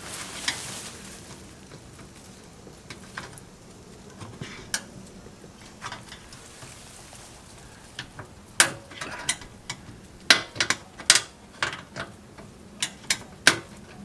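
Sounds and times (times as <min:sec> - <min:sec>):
metal clicks and clanks: 0:04.1 - 0:06.7, 0:07.4 - 0:14.0.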